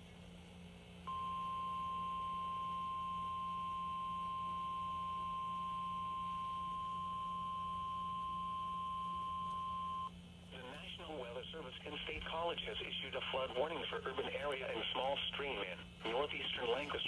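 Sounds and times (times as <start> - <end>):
steady high alarm beep: 1.1 - 10.1.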